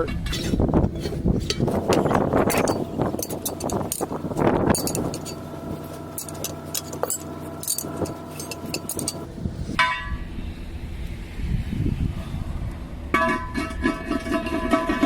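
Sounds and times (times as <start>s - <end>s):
tools and lug nuts clinking: 0.0s - 10.1s, 13.1s - 15.0s
steady hum: 0.1s - 14.8s.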